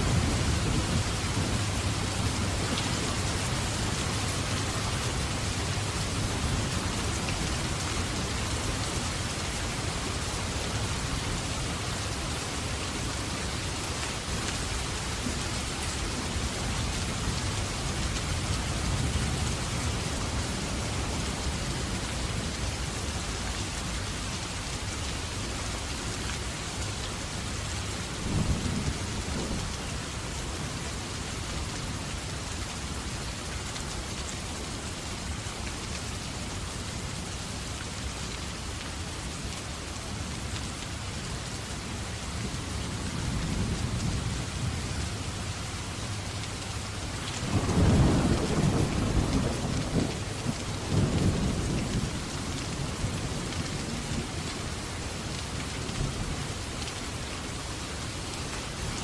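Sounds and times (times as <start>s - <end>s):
steady rain falling: 0.0s - 59.0s
thunder rumbling: 47.4s - 52.2s.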